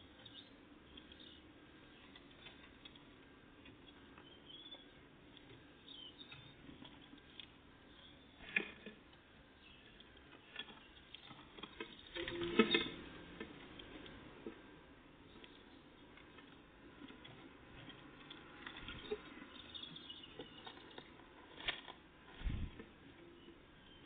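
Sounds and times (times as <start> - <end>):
faint high bird chirps: 0.0 - 2.1, 3.9 - 5.0, 5.7 - 8.5, 18.8 - 20.8, 23.2 - 24.0
birds pecking and scratching: 0.0 - 24.0.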